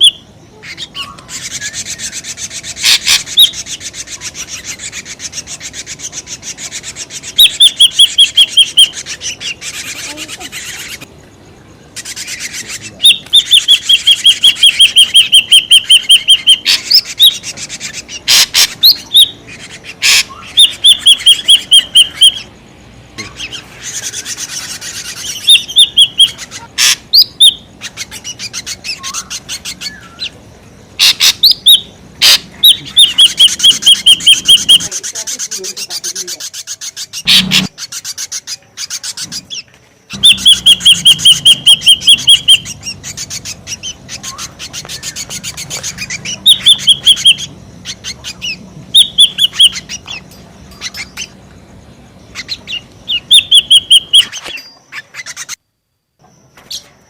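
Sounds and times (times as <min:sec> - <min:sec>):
bird calling repeated notes: 0:00.0 - 0:11.2, 0:11.9 - 0:22.6, 0:23.2 - 0:51.4, 0:52.3 - 0:55.7
rising bird whistles: 0:06.8 - 0:11.1, 0:12.0 - 0:17.6, 0:20.0 - 0:22.5, 0:23.2 - 0:30.4, 0:31.0 - 0:34.9, 0:40.1 - 0:50.2, 0:52.3 - 0:55.6.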